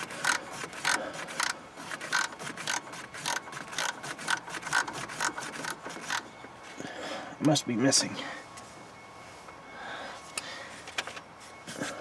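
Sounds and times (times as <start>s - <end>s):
socket ratchet clicking: 0.0s - 6.3s.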